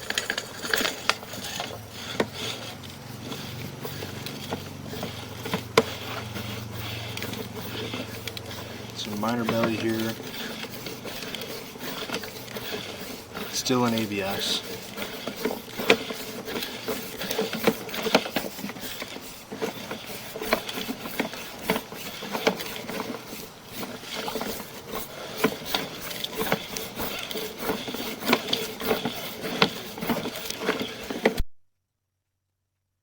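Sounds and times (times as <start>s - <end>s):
steady hum: 0.0s - 31.3s
camera clicking and scraping in pipe: 0.0s - 31.4s.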